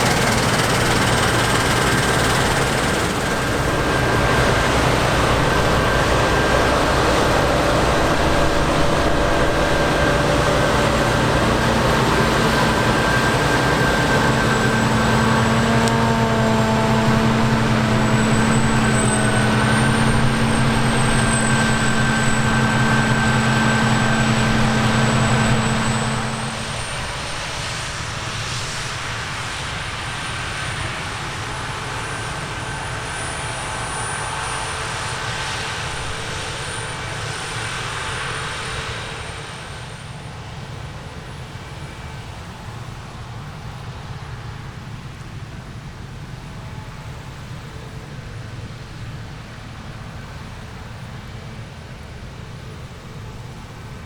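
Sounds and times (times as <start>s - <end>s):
diesel machinery engine hum: 0.0s - 28.6s.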